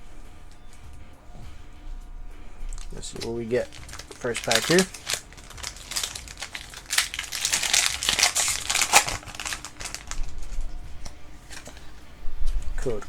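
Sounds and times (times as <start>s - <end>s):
foil wrapper crinkling: 2.7s - 12.0s, 12.6s - 13.0s.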